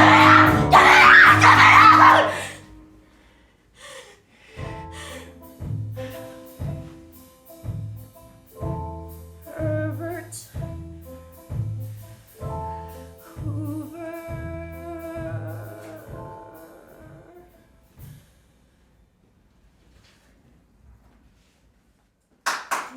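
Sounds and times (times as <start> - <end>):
instrumental accompaniment chords: 0.0 - 3.0.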